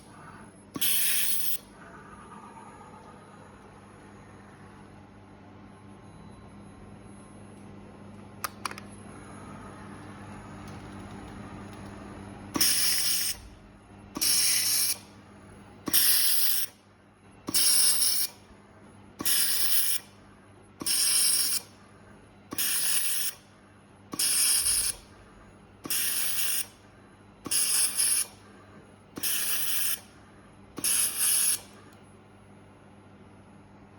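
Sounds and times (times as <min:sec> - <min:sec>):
steady machine hum: 0:00.0 - 0:33.9
laser welder hissing bursts: 0:00.8 - 0:01.6, 0:12.6 - 0:13.5, 0:14.2 - 0:15.1, 0:15.9 - 0:16.8, 0:17.5 - 0:18.4, 0:19.2 - 0:20.1, 0:20.8 - 0:21.7, 0:22.5 - 0:23.4, 0:24.1 - 0:25.2, 0:25.8 - 0:26.8, 0:27.5 - 0:28.4, 0:29.2 - 0:30.1, 0:30.8 - 0:31.8.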